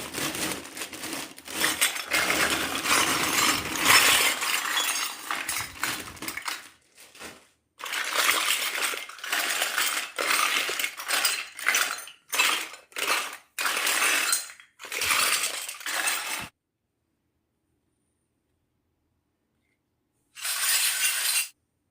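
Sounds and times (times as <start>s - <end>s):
toy pieces clinking and rattling: 0.7s - 6.7s, 7.8s - 16.5s.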